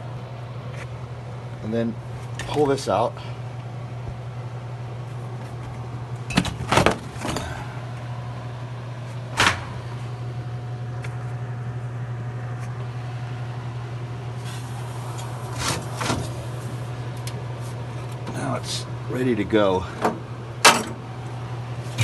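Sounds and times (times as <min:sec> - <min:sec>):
steady low hum: 0:00.0 - 0:22.0
knocks and clunks of machine parts: 0:20.0 - 0:21.0.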